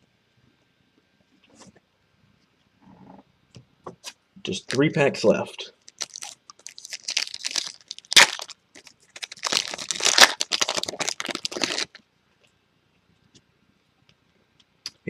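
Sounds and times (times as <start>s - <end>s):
foil wrapper tearing and crinkling: 5.9s - 12.0s.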